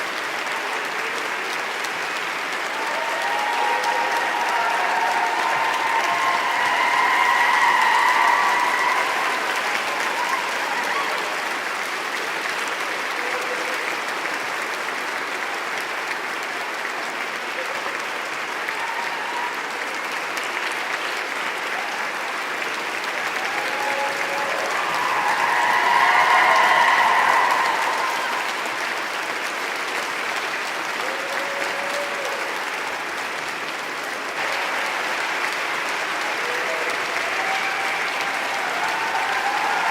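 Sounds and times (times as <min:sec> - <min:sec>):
crowd applauding: 0:00.0 - 0:39.9
voices rising from crowd: 0:23.1 - 0:29.5.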